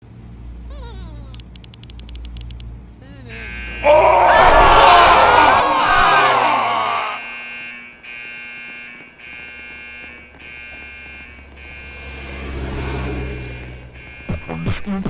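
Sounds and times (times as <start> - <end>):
fire alarm buzzing: 3.3 - 12.6, 13.4 - 14.7.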